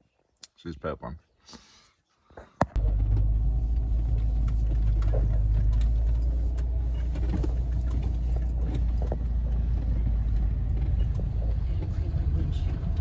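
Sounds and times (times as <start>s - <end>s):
van engine and road rumble: 2.7s - 13.0s.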